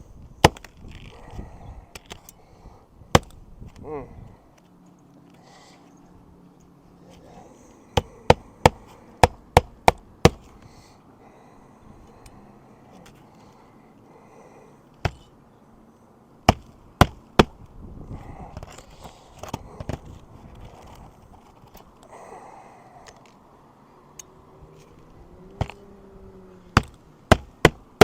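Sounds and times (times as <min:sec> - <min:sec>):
hammer striking roofing nails: 0:03.1 - 0:03.4, 0:07.9 - 0:10.5, 0:15.0 - 0:15.3, 0:16.4 - 0:17.6, 0:25.6 - 0:25.8, 0:26.7 - 0:28.0
shingles scraping: 0:18.2 - 0:22.0.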